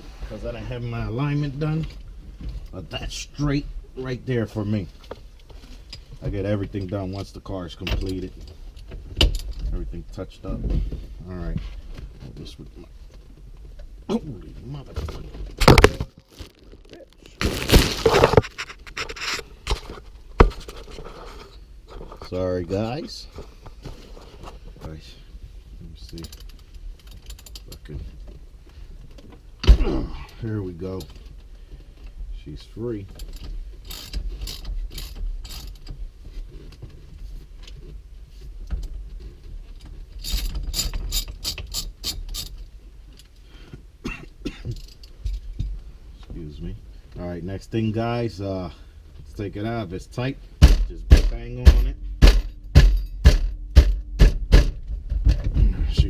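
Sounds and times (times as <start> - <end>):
sharp metal knocks: 50.6 - 55.5.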